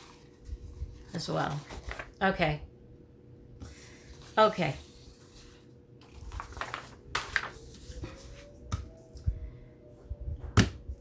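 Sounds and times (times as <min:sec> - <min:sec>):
paper rustling: 0:00.0 - 0:02.3, 0:03.7 - 0:08.6.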